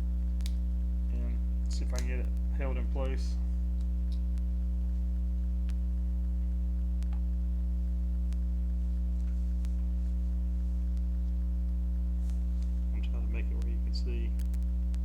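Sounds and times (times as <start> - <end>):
electrical mains hum: 0.0 - 15.0.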